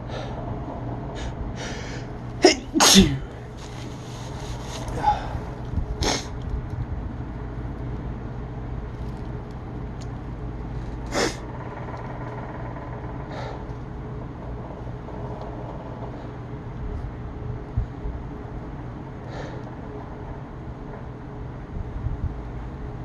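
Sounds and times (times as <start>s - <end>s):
steady low rumble: 0.0s - 23.0s
person sneezing: 2.4s - 3.3s.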